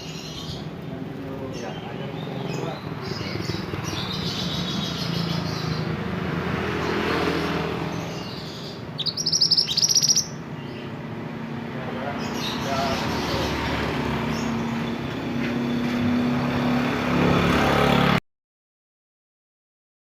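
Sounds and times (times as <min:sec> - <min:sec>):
bird chirping: 0:00.0 - 0:16.0.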